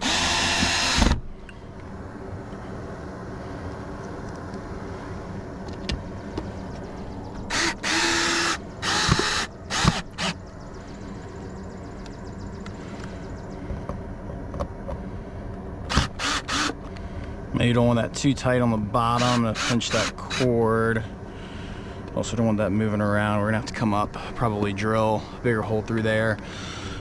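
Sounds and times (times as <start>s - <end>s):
power drill running: 0.0s - 1.2s, 7.5s - 10.4s, 15.9s - 16.8s, 19.2s - 20.4s
steady background hum: 0.0s - 27.0s.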